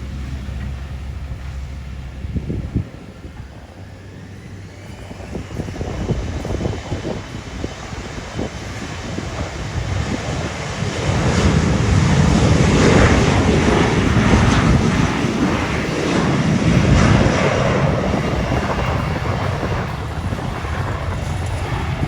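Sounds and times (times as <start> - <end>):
airliner engines rumbling: 0.0 - 22.0.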